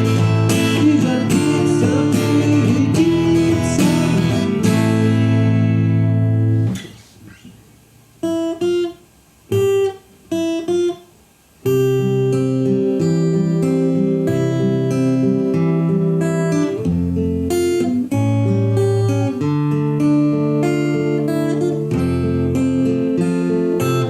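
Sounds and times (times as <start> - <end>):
plucked guitar notes: 0.0 - 6.9, 8.2 - 24.0
acoustic guitar strummed chords: 0.0 - 7.6, 8.2 - 24.0.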